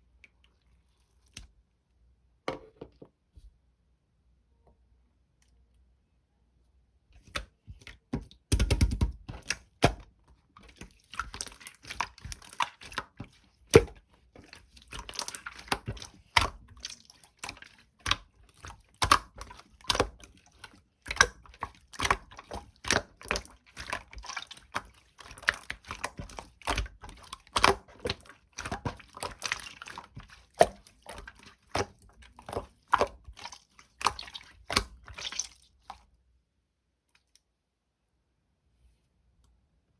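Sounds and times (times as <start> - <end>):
slime sticky wet pops: 10.6 - 35.6.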